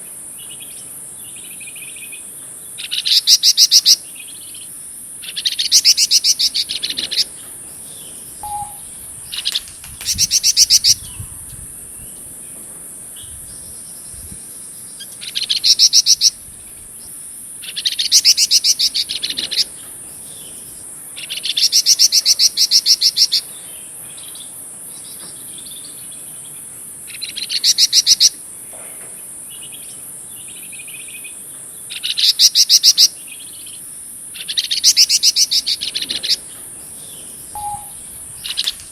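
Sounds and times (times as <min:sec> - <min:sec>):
songbird rattling trills: 0:05.3 - 0:16.4, 0:34.4 - 0:38.9
faint bird warbles: 0:08.3 - 0:11.4, 0:37.5 - 0:38.9.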